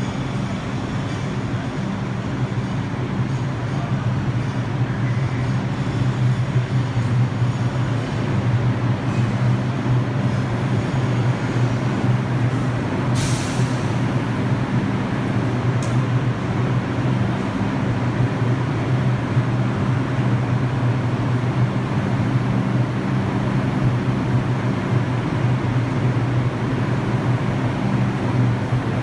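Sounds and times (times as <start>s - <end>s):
train low hum: 0.0s - 29.0s
air release hiss: 12.5s - 14.1s.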